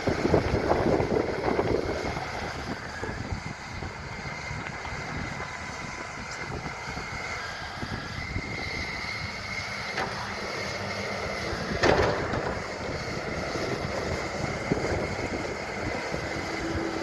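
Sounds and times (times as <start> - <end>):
excavator running: 0.0 - 17.0
sharp knocks: 11.8 - 12.8.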